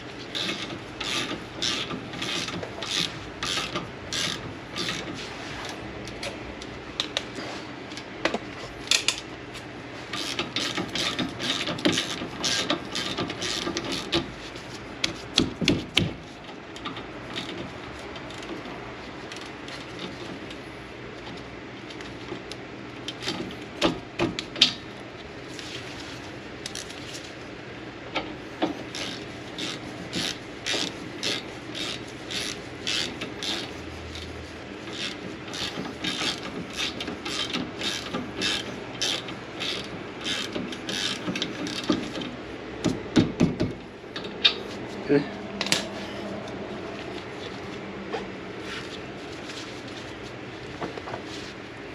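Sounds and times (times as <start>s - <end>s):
ratchet wrench clicking: 0.3s - 5.1s, 28.7s - 34.3s, 34.9s - 42.2s.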